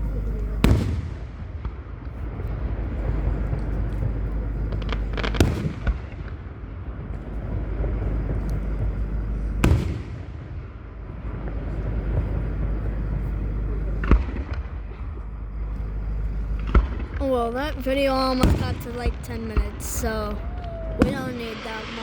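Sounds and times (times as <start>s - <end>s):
low rumble: 0.0s - 22.0s
firework shells booming: 0.1s - 17.2s, 18.4s - 22.0s
firework pops and crackles: 0.6s - 7.4s, 8.0s - 10.4s.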